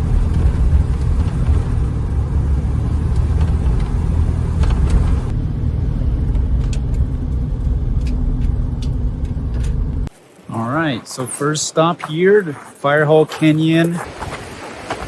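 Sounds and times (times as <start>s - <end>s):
camper van engine and tyres rumbling: 0.0s - 15.0s.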